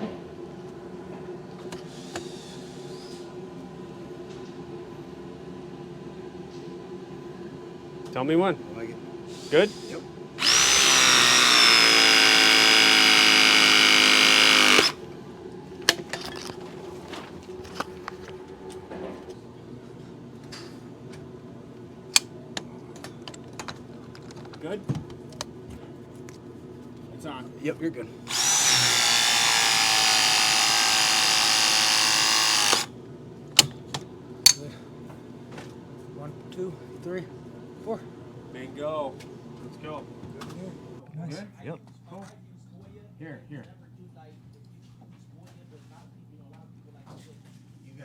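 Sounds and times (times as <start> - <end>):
press tool motor whine: 10.4 - 15.0, 28.3 - 32.9.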